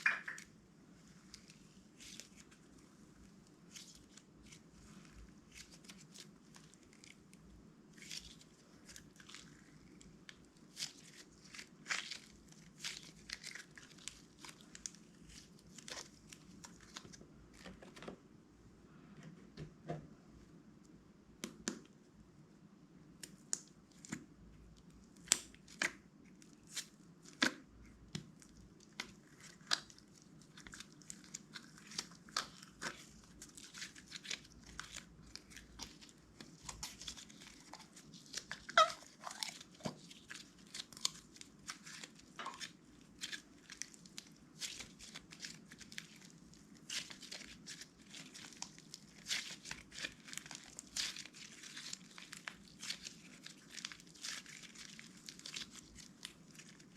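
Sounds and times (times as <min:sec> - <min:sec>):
slime crackling and popping: 0:25.2 - 0:56.9.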